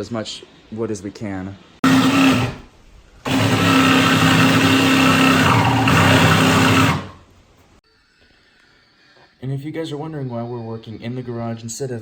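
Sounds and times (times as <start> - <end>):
electric saw cutting wood: 1.8 - 7.2.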